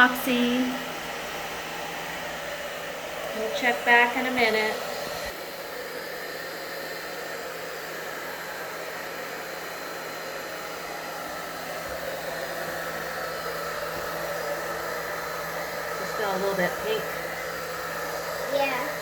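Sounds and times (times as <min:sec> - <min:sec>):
hair dryer running: 0:00.0 - 0:19.0.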